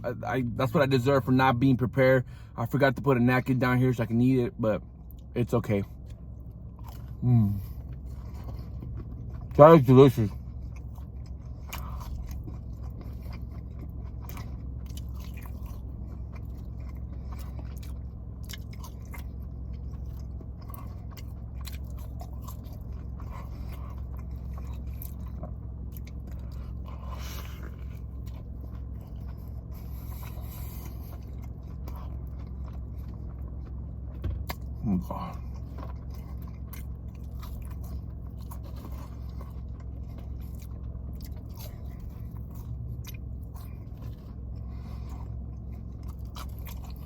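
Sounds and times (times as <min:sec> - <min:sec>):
low hum: 0:00.0 - 0:47.0
close-up chewing and biting: 0:05.0 - 0:47.0.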